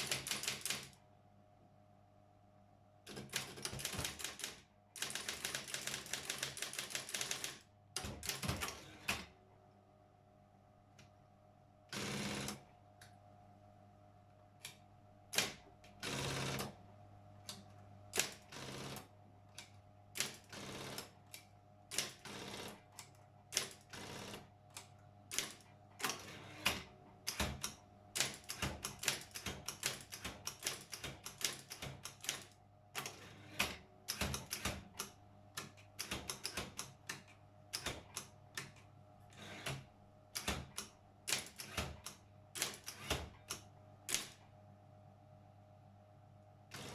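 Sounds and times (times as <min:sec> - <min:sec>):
typewriter keys clacking: 0:00.0 - 0:00.9, 0:03.1 - 0:08.8, 0:25.3 - 0:37.2
mechanical runs of typewriter: 0:00.0 - 0:01.0, 0:03.1 - 0:09.3, 0:15.3 - 0:16.8, 0:18.1 - 0:44.4, 0:46.7 - 0:46.9
typewriter motor humming: 0:00.0 - 0:01.0, 0:03.1 - 0:09.3, 0:11.9 - 0:12.6, 0:15.3 - 0:16.8, 0:20.1 - 0:22.9, 0:23.5 - 0:37.1, 0:39.3 - 0:44.4, 0:46.7 - 0:46.9.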